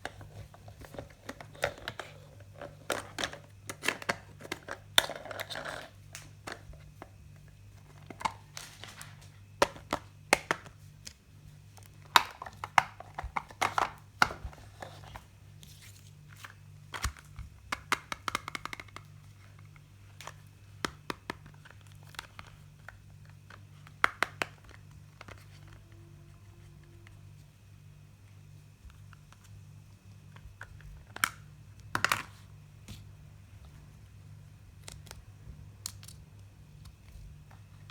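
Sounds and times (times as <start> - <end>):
plastic pieces clicking: 35.8 - 36.2.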